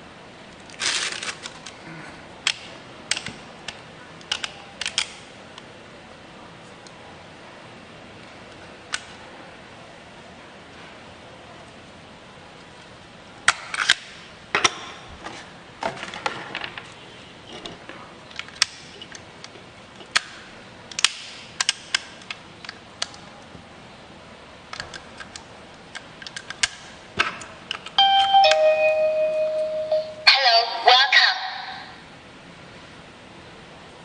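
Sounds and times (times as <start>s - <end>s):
electronic doorbell chime: 28.0s - 30.3s.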